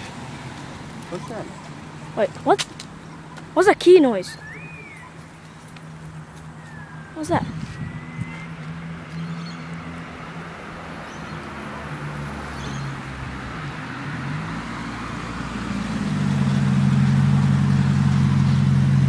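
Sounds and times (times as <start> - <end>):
road noise: 0.0 - 19.0
car engine running: 15.4 - 19.0.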